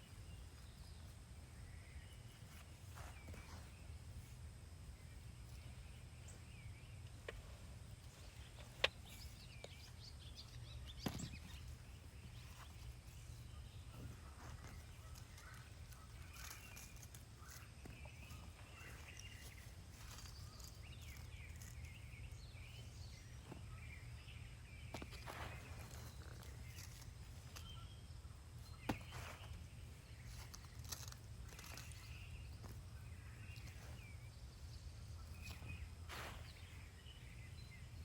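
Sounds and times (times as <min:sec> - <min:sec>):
birds chirping faintly: 0:00.0 - 0:38.0
hands rummaging through soil: 0:08.0 - 0:22.2, 0:24.9 - 0:27.8, 0:28.7 - 0:34.3.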